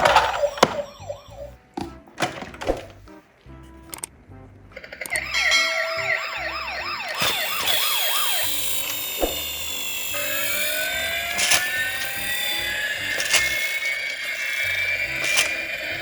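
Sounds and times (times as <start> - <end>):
toy electronic sirens: 0.0 - 1.7, 4.8 - 16.0
sharp clicks: 7.2 - 16.0.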